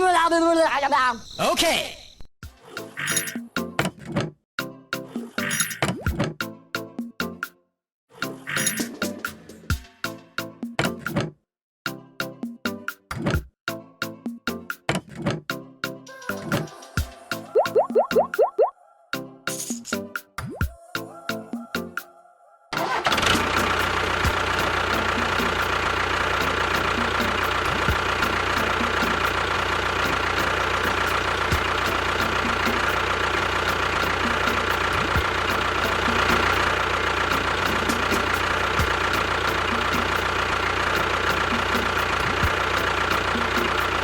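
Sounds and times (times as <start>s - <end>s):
engine running: 22.8s - 44.0s.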